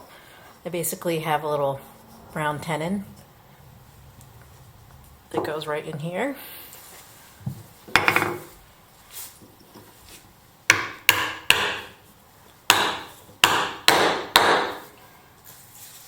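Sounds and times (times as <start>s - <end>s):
mallet knocking on wood: 10.7s - 11.9s, 12.7s - 14.8s.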